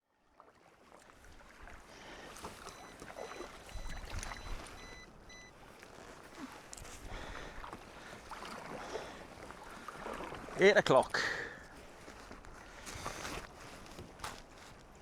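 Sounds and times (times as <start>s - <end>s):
water lapping against kayak hull: 0.1s - 15.0s
short electronic beeps: 2.6s - 5.6s.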